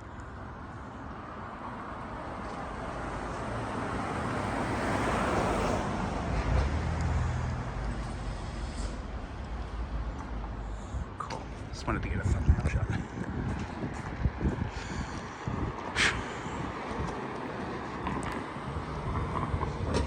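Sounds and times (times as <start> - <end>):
vehicle passing by: 2.7 - 10.8, 12.3 - 20.0.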